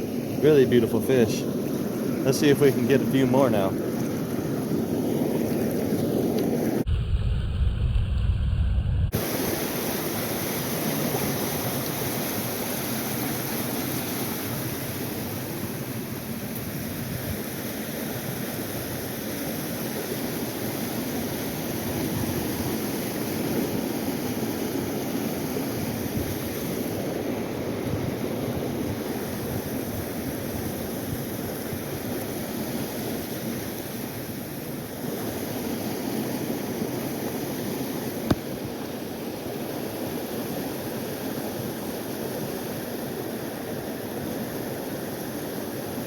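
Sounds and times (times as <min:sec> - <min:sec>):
river current rushing: 0:00.0 - 0:06.9, 0:09.2 - 0:46.0
wind buffeting the microphone: 0:16.5 - 0:17.6, 0:25.4 - 0:33.3.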